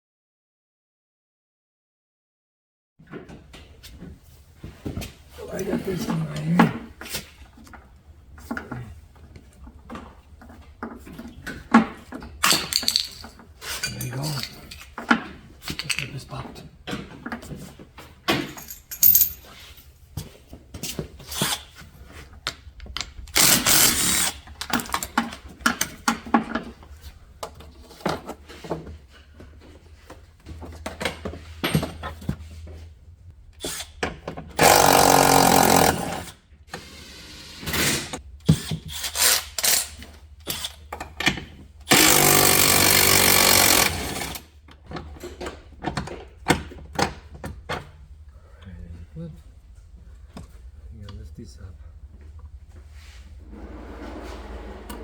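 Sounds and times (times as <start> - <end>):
power tool running: 23.4 - 24.4, 34.6 - 36.2, 41.9 - 44.4.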